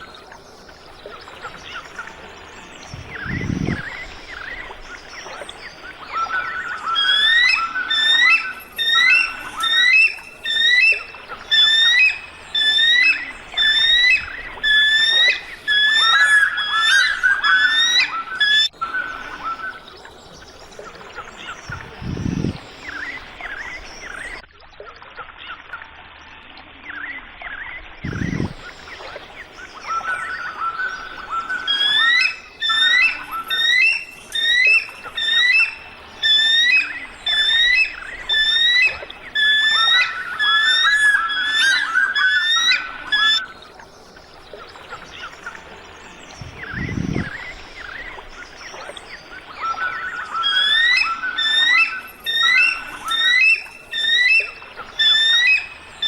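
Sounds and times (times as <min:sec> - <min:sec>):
eagle piping calls: 0:02.8 - 0:19.8, 0:21.4 - 0:24.4, 0:28.0 - 0:43.6, 0:46.4 - 0:48.3, 0:49.2 - 0:56.0.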